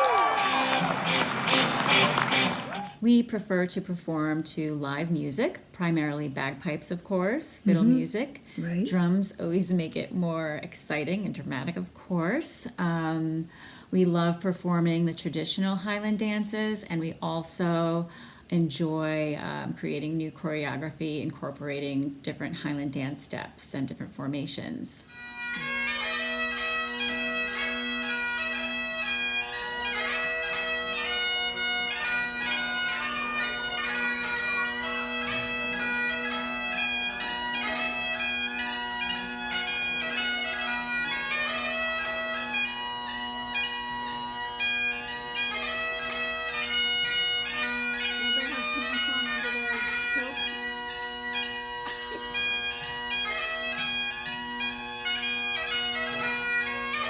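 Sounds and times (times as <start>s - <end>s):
bagpipes playing a fast tune: 0.0s - 2.9s, 8.6s - 8.9s, 25.1s - 57.0s
bagpipe drones: 0.0s - 3.0s, 7.7s - 9.0s, 25.1s - 57.0s.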